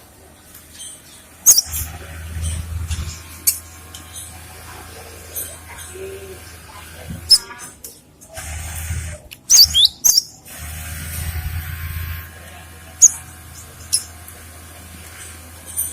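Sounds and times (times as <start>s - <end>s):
bird giving sharp high calls: 9.5s - 10.3s.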